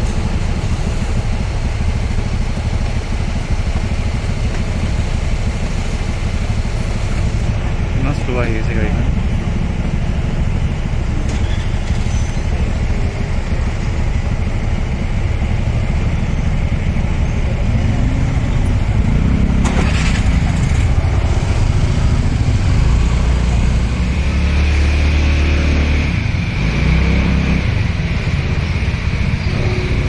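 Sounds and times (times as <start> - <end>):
vehicle engines rumbling: 0.0 - 30.0.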